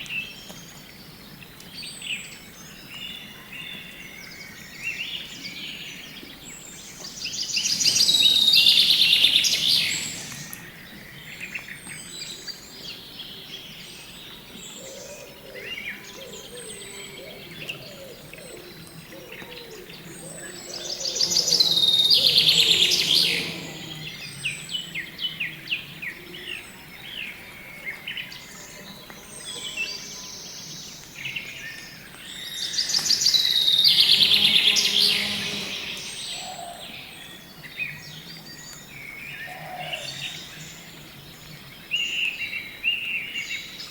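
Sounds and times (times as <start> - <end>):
rapid trilling birdsong: 2.1 - 43.9
bird chirps and high whistles: 32.3 - 36.7.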